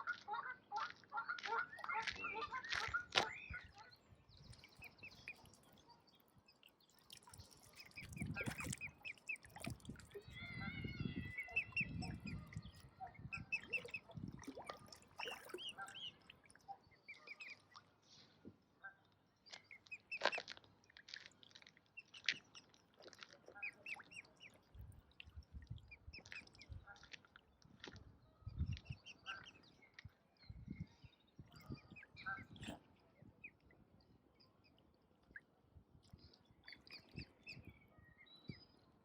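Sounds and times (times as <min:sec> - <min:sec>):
ducks quacking: 0:00.0 - 0:03.8.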